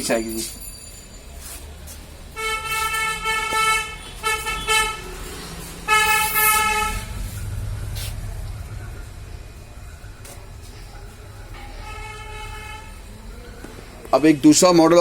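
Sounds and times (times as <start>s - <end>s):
traffic rumble: 0.0s - 15.0s
vehicle horn honking: 2.4s - 7.6s, 11.5s - 13.2s.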